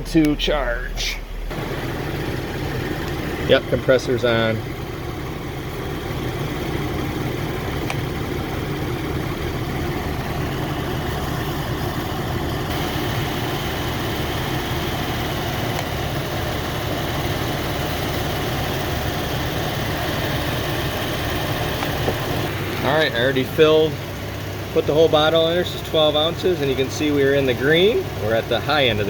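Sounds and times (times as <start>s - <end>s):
car engine idling: 0.0s - 29.0s.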